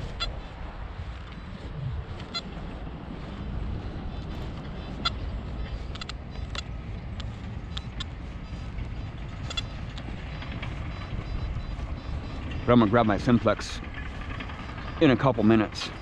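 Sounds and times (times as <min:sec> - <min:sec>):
steady low rumble: 0:00.0 - 0:16.0
faint short ticks and chirps: 0:04.1 - 0:12.7.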